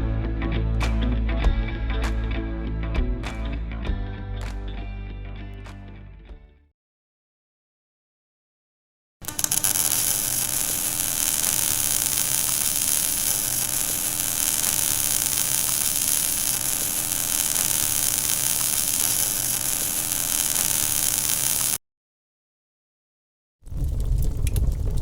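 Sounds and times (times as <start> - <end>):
machine hum with hiss: 9.2 - 21.8.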